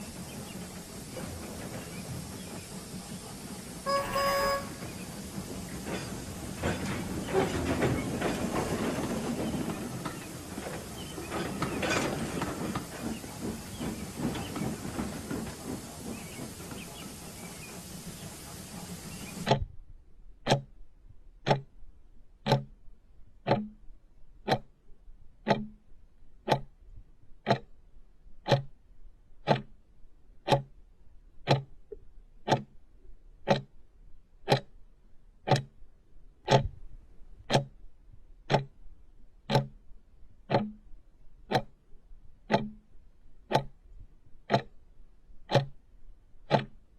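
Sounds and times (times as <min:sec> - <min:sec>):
hissing steam: 0:00.0 - 0:19.5
running train: 0:00.0 - 0:19.5
clock ticking: 0:19.4 - 0:19.7, 0:20.4 - 0:20.8, 0:21.4 - 0:21.8, 0:22.4 - 0:22.8, 0:23.4 - 0:23.8, 0:24.4 - 0:24.8, 0:25.4 - 0:25.8, 0:26.4 - 0:26.8, 0:27.4 - 0:27.7, 0:28.4 - 0:28.8, 0:29.4 - 0:29.8, 0:30.4 - 0:30.8, 0:31.4 - 0:31.8, 0:32.4 - 0:32.7, 0:33.4 - 0:33.8, 0:34.4 - 0:34.8, 0:35.4 - 0:35.8, 0:36.4 - 0:37.9, 0:38.5 - 0:38.8, 0:39.4 - 0:39.8, 0:40.4 - 0:40.9, 0:41.5 - 0:43.9, 0:44.5 - 0:44.8, 0:45.4 - 0:46.9.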